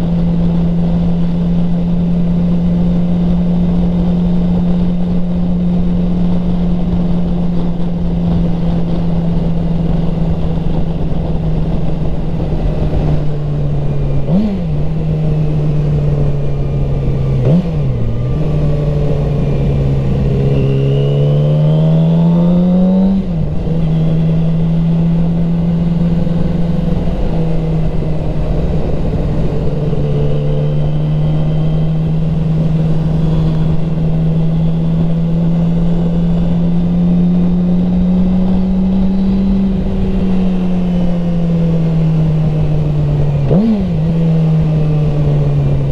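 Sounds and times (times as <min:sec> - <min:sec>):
motorcycle engine revving: 0:00.0 - 0:45.9.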